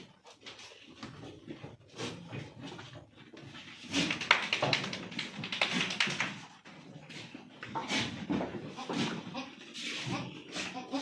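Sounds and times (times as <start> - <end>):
goats bleating: 8.6 - 11.0.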